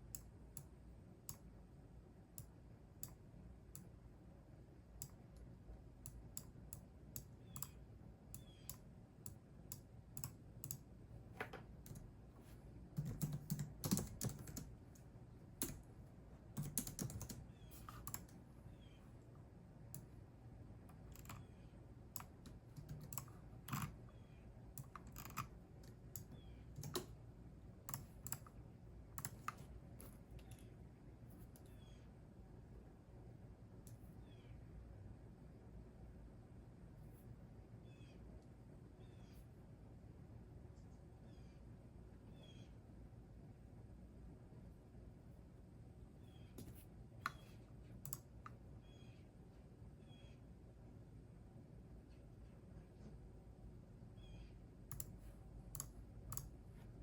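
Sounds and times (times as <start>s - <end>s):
computer keyboard typing: 13.0s - 15.8s, 16.5s - 18.4s, 20.9s - 21.5s, 22.2s - 24.0s, 24.8s - 27.2s, 27.8s - 28.6s, 29.2s - 29.7s, 54.9s - 56.6s.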